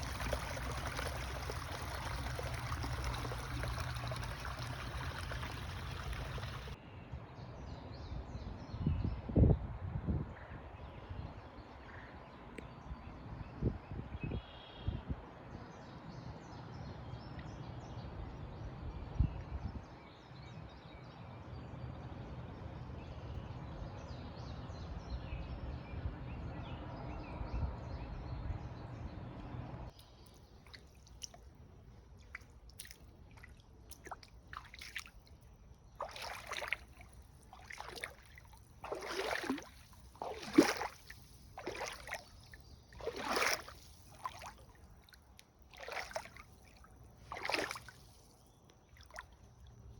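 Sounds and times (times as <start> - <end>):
water sloshing and splashing: 0.0 - 6.8, 29.9 - 49.9.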